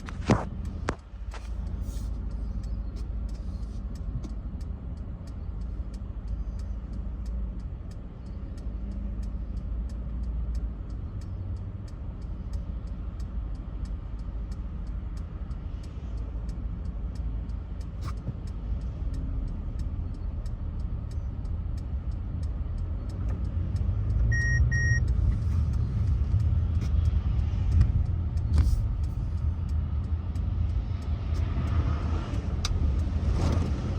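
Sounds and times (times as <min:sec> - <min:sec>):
car road noise rumble: 0:00.0 - 0:33.9
electronic beep: 0:24.3 - 0:25.1.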